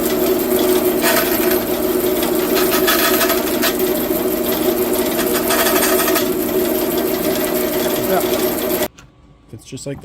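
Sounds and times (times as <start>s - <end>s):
handheld power tool buzzing: 0.0s - 8.9s.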